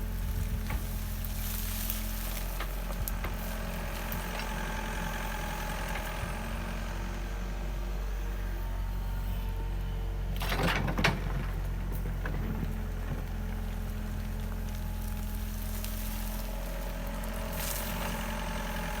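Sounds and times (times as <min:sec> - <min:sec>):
soft rustle: 0:00.0 - 0:04.6, 0:12.8 - 0:18.6
engine idling: 0:00.0 - 0:19.0.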